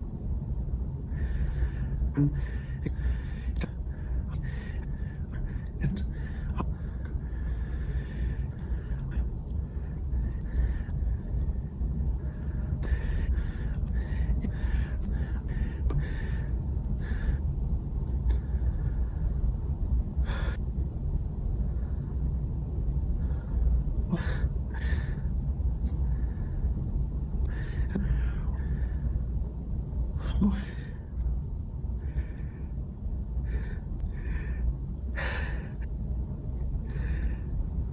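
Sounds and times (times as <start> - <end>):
steady low rumble: 0.0 - 37.9
man catching breaths: 1.1 - 17.5.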